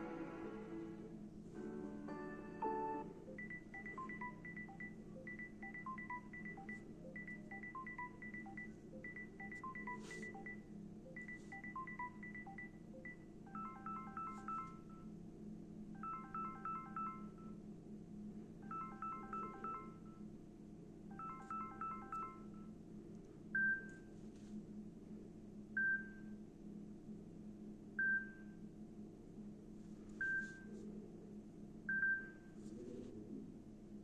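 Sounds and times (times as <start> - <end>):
steady low hum: 0.0 - 34.0
chiming two-tone ringtone beeps: 3.2 - 15.1, 16.0 - 17.6, 18.7 - 20.2, 21.1 - 22.7.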